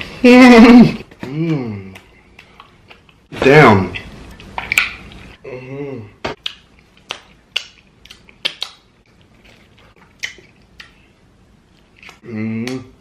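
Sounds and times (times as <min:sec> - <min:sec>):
person humming moan: 0:00.2 - 0:02.0, 0:05.4 - 0:06.2, 0:12.2 - 0:13.0
lip smacks while chewing: 0:06.4 - 0:11.0.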